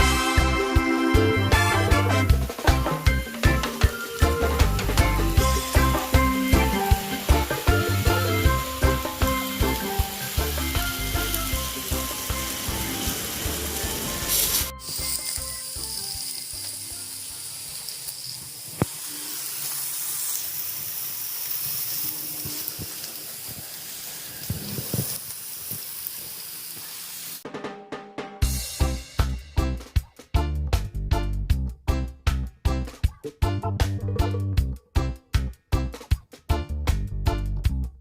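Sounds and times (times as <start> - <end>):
background music with beat: 0.0 - 16.2, 27.4 - 38.0
food sizzling on grill: 0.0 - 27.4.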